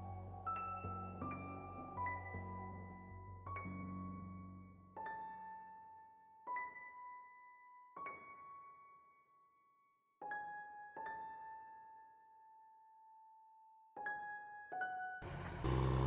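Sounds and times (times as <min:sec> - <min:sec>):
slow piano notes: 0:00.0 - 0:07.3.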